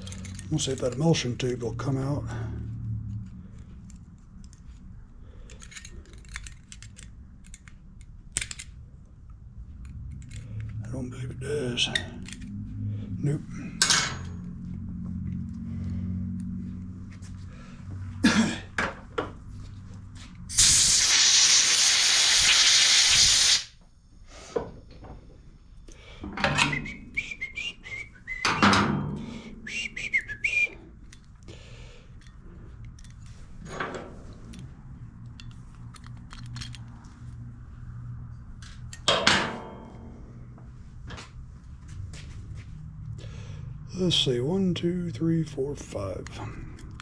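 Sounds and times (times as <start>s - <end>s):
small metal parts clicking: 0.0s - 1.3s, 5.4s - 8.8s, 9.8s - 10.8s, 11.9s - 12.6s, 31.0s - 33.4s, 34.4s - 37.1s
pressurised air blast hissing: 20.5s - 23.8s.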